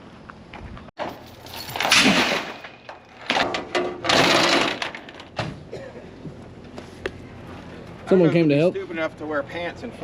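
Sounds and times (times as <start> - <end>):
sharp chain clinks: 1.0 - 2.1
metal chain rattling and clanking: 1.0 - 5.4.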